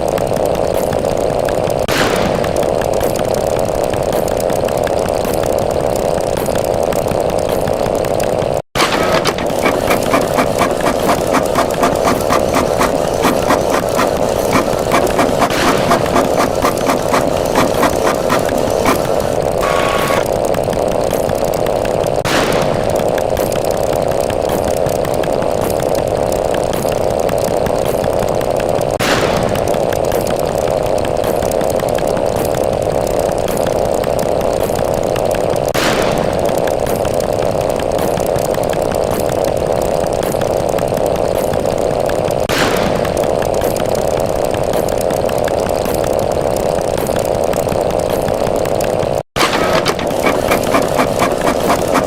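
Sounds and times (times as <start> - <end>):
buzzing number counter: 0.0 - 22.2, 43.1 - 52.0.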